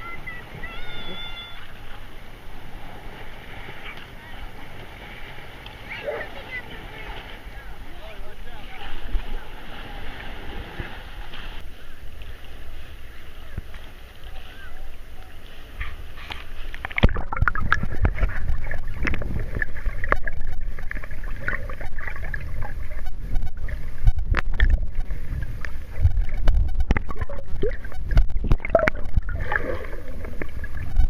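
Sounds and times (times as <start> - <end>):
rumble of moving sea water: 0.0 - 31.0
water splashing against camera: 0.0 - 31.0.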